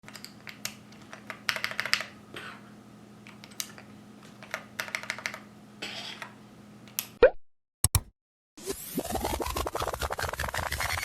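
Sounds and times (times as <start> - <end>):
mechanical keyboard typing: 0.1 - 2.1, 4.4 - 5.4.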